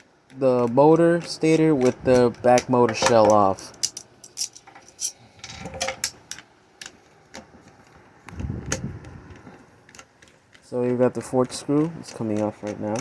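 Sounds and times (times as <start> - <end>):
rubbing and handling noise: 0.0 - 13.0
metal motor parts clinking: 0.3 - 6.5.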